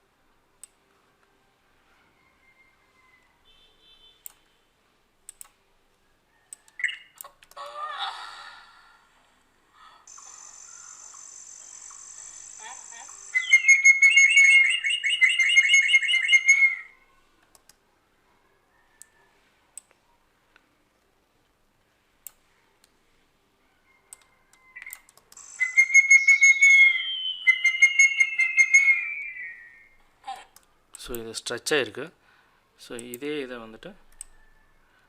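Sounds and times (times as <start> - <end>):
faint mouse clicks: 0.6 - 0.8, 5.3 - 5.6, 24.1 - 25.4, 32.9 - 33.3, 34.1 - 34.4
high-pitched hiss-like tone: 10.1 - 13.9, 25.4 - 27.4
bird chirps: 10.1 - 17.1, 24.6 - 30.0
fast whistled trill: 10.2 - 16.9, 25.4 - 30.0.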